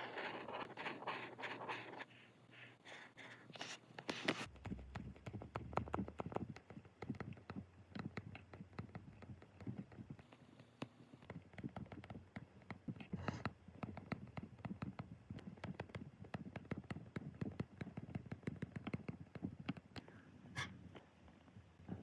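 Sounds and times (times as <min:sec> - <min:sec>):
pen scratching on paper: 0:00.0 - 0:10.2.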